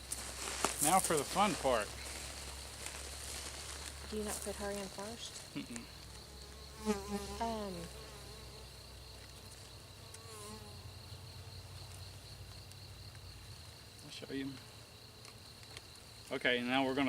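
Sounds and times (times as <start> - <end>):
bees humming: 2.0 - 11.7
bee flying past: 3.9 - 11.6.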